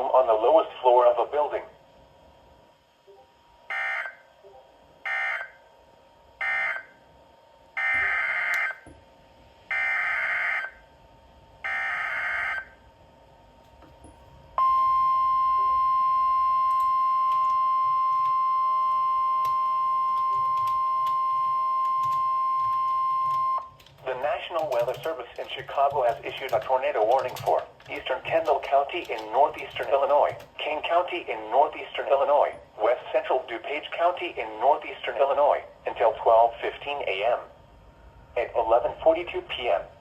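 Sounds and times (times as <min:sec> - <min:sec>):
loud steady warning alarm tone: 0:03.1 - 0:05.7, 0:06.4 - 0:07.1, 0:07.7 - 0:08.9, 0:09.7 - 0:10.8, 0:11.6 - 0:12.9, 0:14.0 - 0:30.8
emergency alert data bursts: 0:03.7 - 0:05.6, 0:06.4 - 0:07.0, 0:07.8 - 0:08.8, 0:09.7 - 0:10.8, 0:11.6 - 0:12.8, 0:14.6 - 0:30.6.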